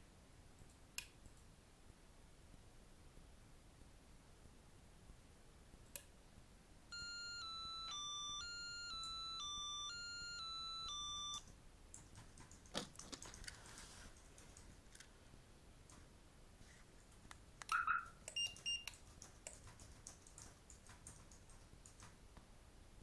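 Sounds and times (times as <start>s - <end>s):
car alarm descending beeps: 6.9s - 11.4s
faint clicks and rustles: 11.4s - 22.5s.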